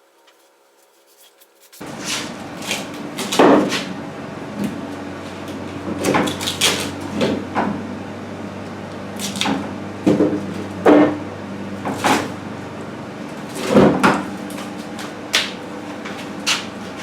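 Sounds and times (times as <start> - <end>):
low machine hum: 1.8 - 17.0.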